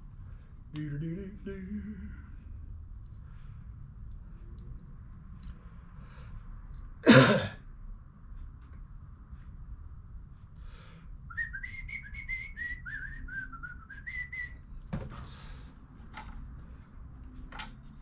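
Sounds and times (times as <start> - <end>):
person whistling a tune: 11.3 - 14.6.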